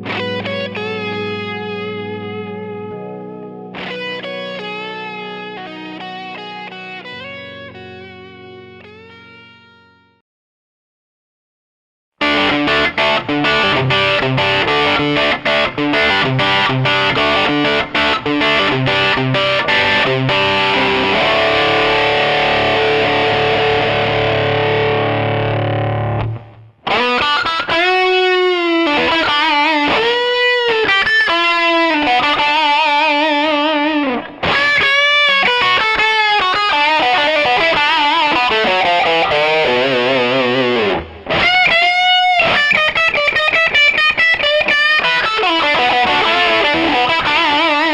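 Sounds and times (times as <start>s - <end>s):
distorted electric guitar: 0.0s - 10.2s, 12.2s - 47.9s.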